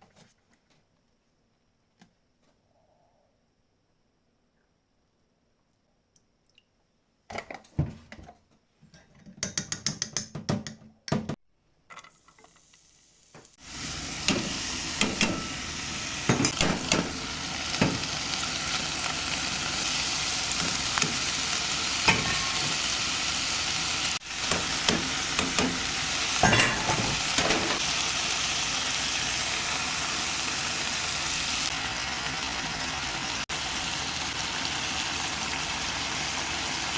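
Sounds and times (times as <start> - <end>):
food sizzling in a pan: 12.1 - 36.9.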